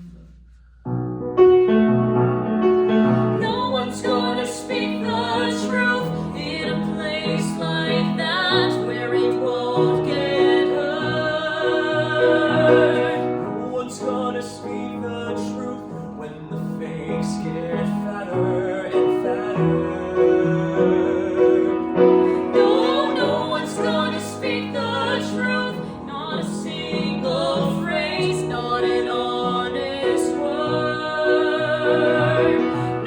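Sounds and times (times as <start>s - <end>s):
piano accompaniment: 0.8s - 33.0s
operatic singing voice: 3.2s - 33.0s.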